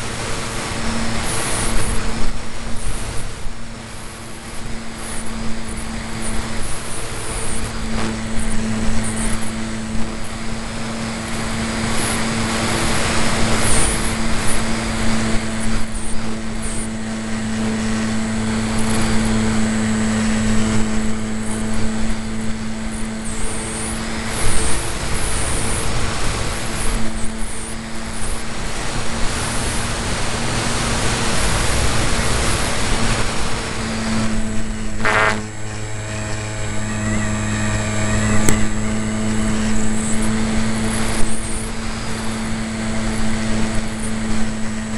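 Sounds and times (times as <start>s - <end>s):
model plane motor and propeller: 0.0s - 44.9s
rushing air: 0.0s - 44.9s.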